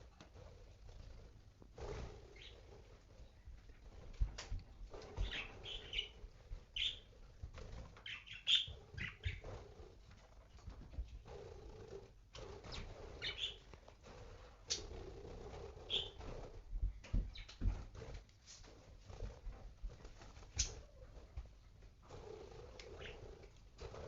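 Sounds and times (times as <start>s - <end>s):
small knocks and rustles: 3.5s - 5.9s, 10.1s - 11.3s, 15.6s - 22.1s
budgerigars chirping: 5.2s - 6.1s, 8.1s - 9.4s, 12.7s - 13.6s, 15.9s - 16.2s.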